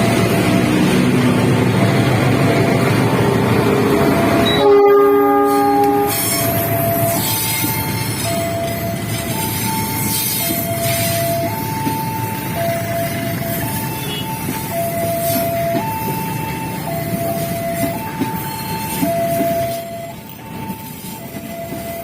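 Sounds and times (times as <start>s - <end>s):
train rail rumble: 0.0s - 22.0s
two-tone crossing alarm: 0.0s - 22.0s
train horn blast: 4.4s - 6.4s.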